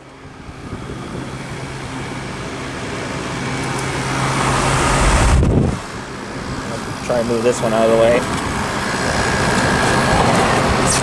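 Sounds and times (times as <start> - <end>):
air conditioner running: 0.0 - 11.0.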